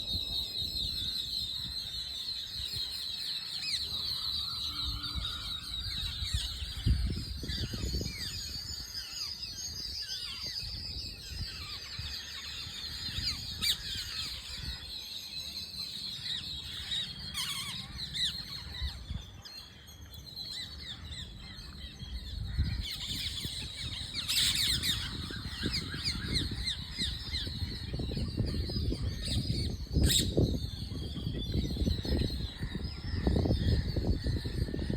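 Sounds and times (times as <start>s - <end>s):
parrots calling: 16.6s - 18.9s, 22.8s - 27.9s.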